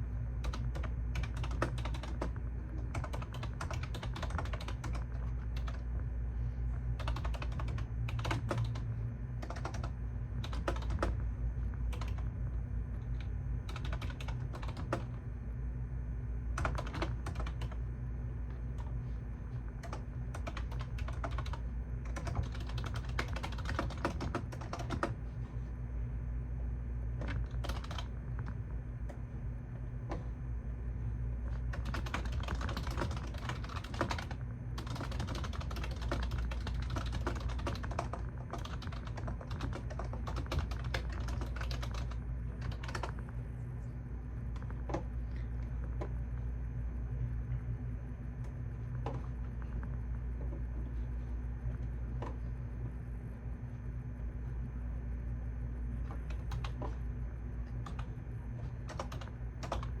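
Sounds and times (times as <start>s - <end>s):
steady low hum: 0.0s - 60.0s
typing on computer keyboard: 0.4s - 5.8s, 7.0s - 11.2s, 11.9s - 12.3s, 13.1s - 15.2s, 16.6s - 17.8s, 19.8s - 25.2s, 27.2s - 28.1s, 31.5s - 43.2s, 56.0s - 57.0s, 57.7s - 58.1s, 58.8s - 60.0s.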